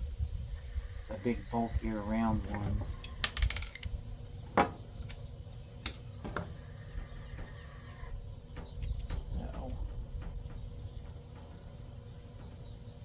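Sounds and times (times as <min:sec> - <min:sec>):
plastic parts and tools clicking: 0:03.2 - 0:03.9.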